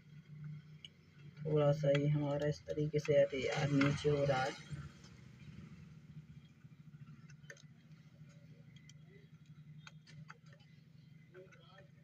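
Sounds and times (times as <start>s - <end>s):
faint clicks and ticks: 0.0s - 4.0s, 6.2s - 12.0s.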